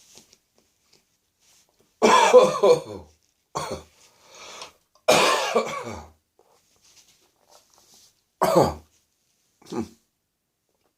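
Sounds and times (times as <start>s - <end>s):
man coughing: 2.0s - 3.9s, 5.1s - 6.2s, 8.4s - 8.9s.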